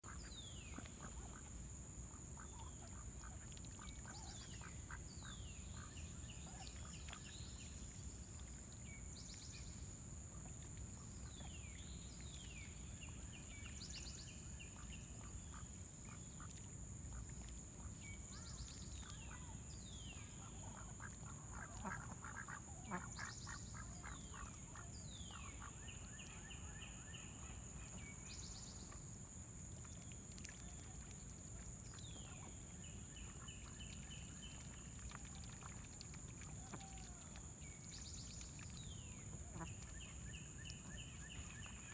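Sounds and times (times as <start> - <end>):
songbird singing: 10.8 - 17.2, 17.8 - 41.9.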